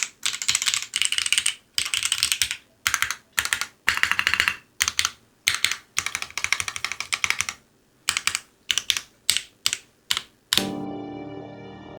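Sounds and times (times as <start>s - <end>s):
mechanical keyboard typing: 0.0s - 10.8s
sustained multi-pitched tone: 10.6s - 12.0s.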